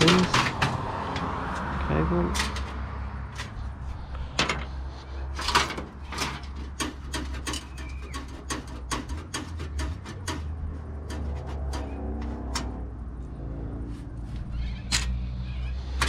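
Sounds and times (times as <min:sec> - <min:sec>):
metal computer parts clinking: 0:05.3 - 0:10.5.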